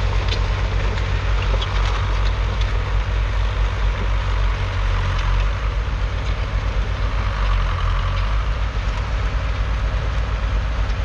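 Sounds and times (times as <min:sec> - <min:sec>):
tractor diesel engine running: 0:00.0 - 0:11.0.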